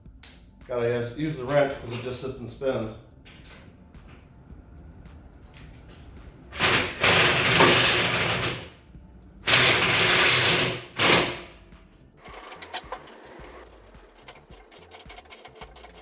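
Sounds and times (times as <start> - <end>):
ratchet wrench clicking: 6.5 - 8.7, 9.5 - 11.4, 12.2 - 16.0.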